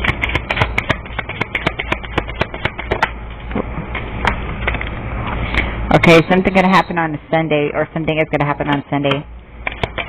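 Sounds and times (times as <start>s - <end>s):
cards shuffling clicks and slaps: 0.0s - 3.2s, 9.6s - 10.0s
steady low hum: 0.0s - 10.0s.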